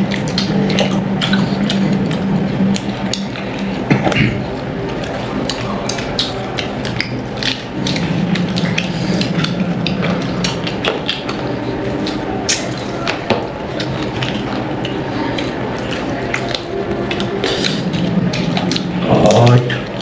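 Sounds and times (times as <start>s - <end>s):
chewing and eating sounds: 0.0s - 20.0s
steady low hum: 0.0s - 20.0s.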